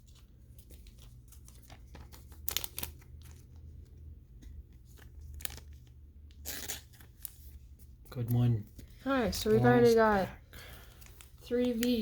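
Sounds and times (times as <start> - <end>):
foil wrappers crinkling: 0.0 - 3.6, 4.8 - 7.5, 9.7 - 12.0.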